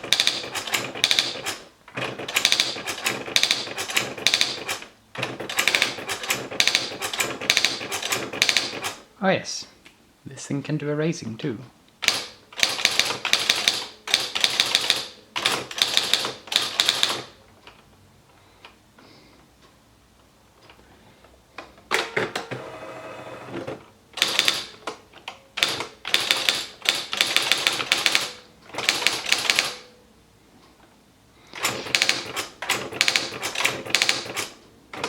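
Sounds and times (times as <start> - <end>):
electric typewriter clattering: 0.0 - 9.1, 12.0 - 17.4, 21.9 - 29.9, 31.5 - 35.0.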